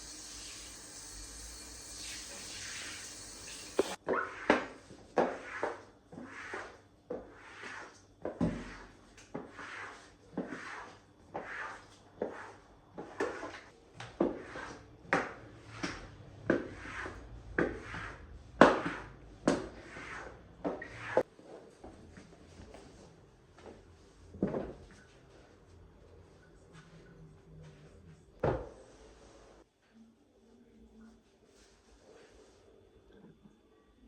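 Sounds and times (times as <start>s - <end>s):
scrubbing strokes on a surface: 0.2s - 4.5s, 8.6s - 13.7s, 15.6s - 21.3s.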